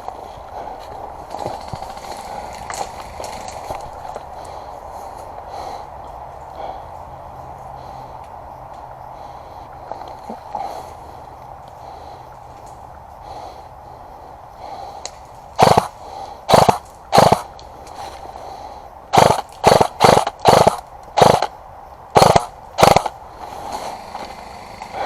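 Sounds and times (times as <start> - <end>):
airsoft gun shots: 15.6 - 15.9, 16.5 - 17.5, 19.1 - 21.5, 22.2 - 23.2.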